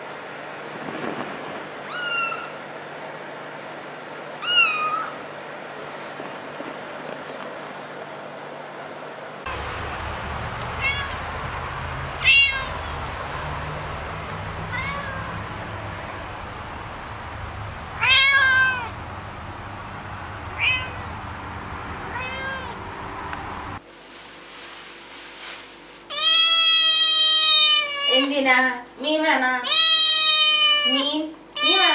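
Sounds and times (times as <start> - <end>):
cat meowing: 1.9 - 2.6, 4.4 - 5.2, 10.5 - 15.8, 17.5 - 19.0, 20.5 - 21.2, 22.1 - 22.8, 26.1 - 28.3, 29.6 - 31.9.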